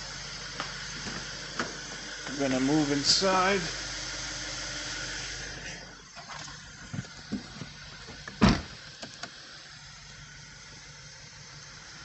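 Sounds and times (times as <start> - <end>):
car engine idling: 0.0 - 4.6, 5.3 - 12.0
car door slamming: 7.3 - 9.2.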